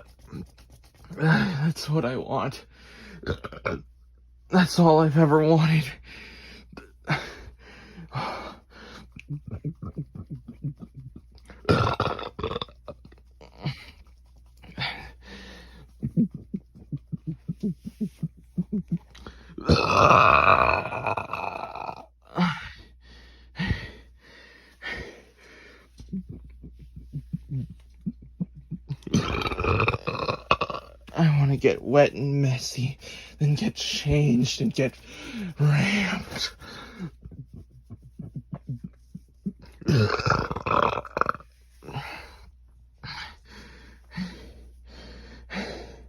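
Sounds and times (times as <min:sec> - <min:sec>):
breathing: 0:02.7 - 0:03.2, 0:06.0 - 0:09.1, 0:14.8 - 0:15.9, 0:22.4 - 0:25.9, 0:33.0 - 0:33.4, 0:35.0 - 0:37.1, 0:41.9 - 0:46.0
man burping: 0:03.2 - 0:03.9, 0:11.5 - 0:12.9, 0:18.7 - 0:22.6, 0:27.4 - 0:31.0, 0:39.8 - 0:42.2
quick short gulps: 0:33.0 - 0:42.5.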